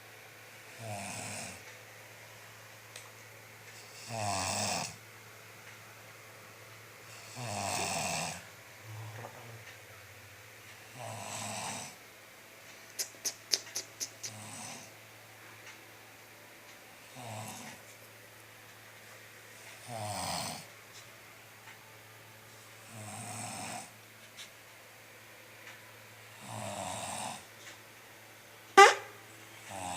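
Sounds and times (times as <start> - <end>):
person snoring: 0.8 - 1.6, 3.8 - 5.0, 7.1 - 9.3, 11.0 - 12.0, 14.2 - 14.9, 17.1 - 17.8, 19.8 - 20.7, 22.8 - 24.0, 26.4 - 27.5, 29.7 - 29.9.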